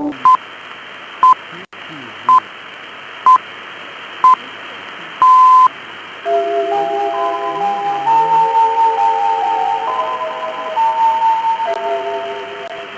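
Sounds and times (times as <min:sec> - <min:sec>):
radio-like hiss: 0:00.0 - 0:12.9
electronic beeps: 0:05.2 - 0:05.7.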